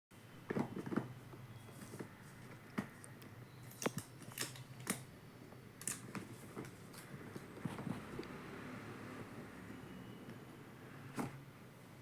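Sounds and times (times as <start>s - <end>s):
cardboard and plastic rustling: 0.4s - 4.7s, 5.9s - 8.2s
packaging clicks: 3.1s - 5.1s.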